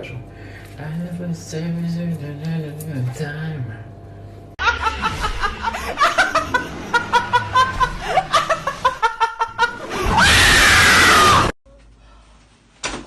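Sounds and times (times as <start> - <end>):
person screaming: 10.0 - 11.5.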